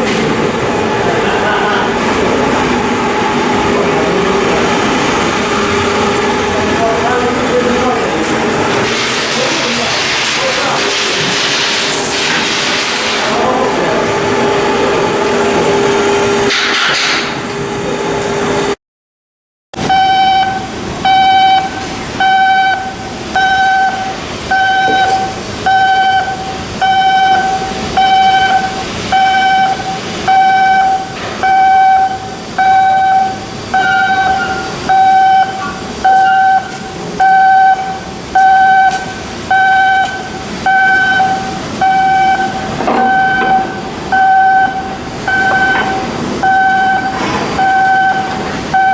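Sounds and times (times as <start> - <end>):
electronic warning beeper: 19.8 - 48.9.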